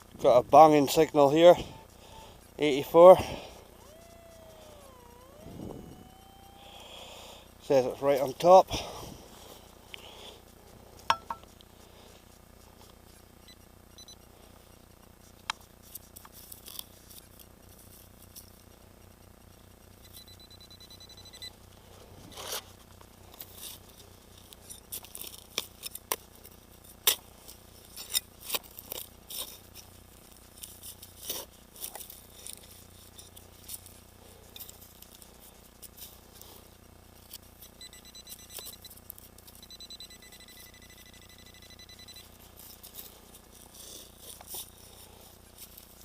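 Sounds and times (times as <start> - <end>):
metal detector beep: 0.9 - 8.4, 11.1 - 11.4, 13.4 - 14.8, 20.0 - 21.6, 37.6 - 42.8
digging in soil: 20.1 - 46.0.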